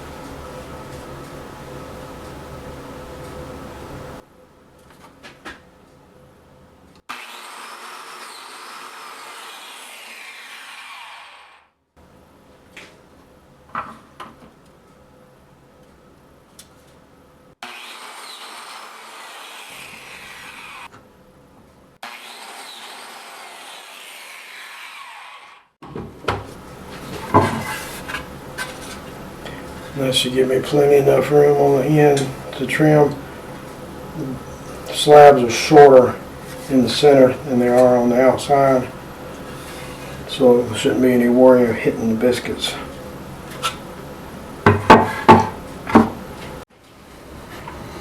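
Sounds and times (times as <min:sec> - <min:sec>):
biscuit joiner cutting wood: 0:07.1 - 0:11.6, 0:17.6 - 0:20.9, 0:22.0 - 0:25.7
tool and boards knocking: 0:27.2 - 0:28.7, 0:44.6 - 0:46.2.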